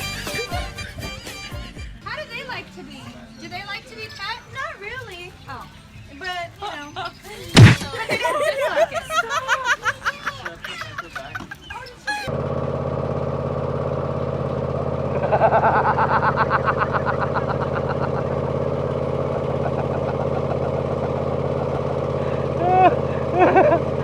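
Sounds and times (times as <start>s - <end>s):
engine idling: 12.3s - 24.0s.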